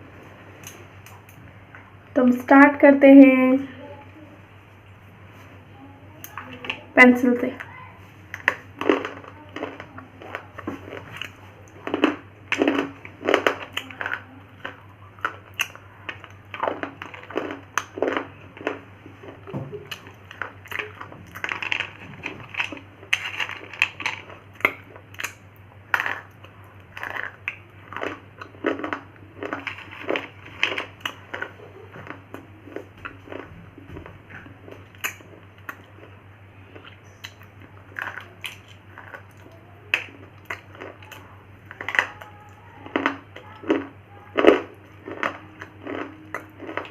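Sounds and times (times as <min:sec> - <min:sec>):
steady low hum: 0:00.0 - 0:46.9
chewing crunches: 0:07.6 - 0:46.9.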